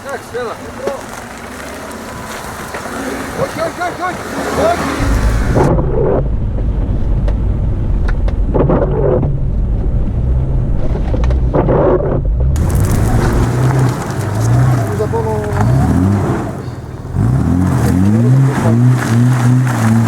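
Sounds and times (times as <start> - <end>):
off-road vehicle engine droning: 0.0 - 20.0.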